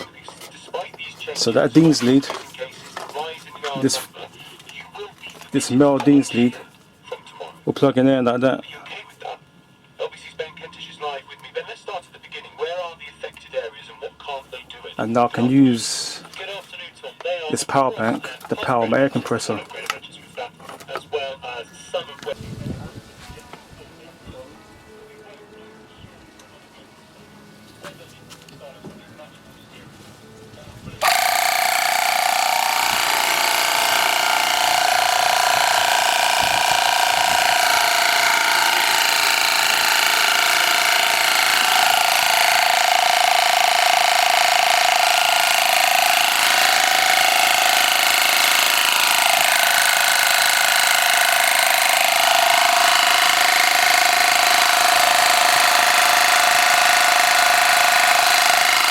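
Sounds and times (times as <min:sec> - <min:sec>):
portable air compressor running: 0:31.0 - 0:58.9.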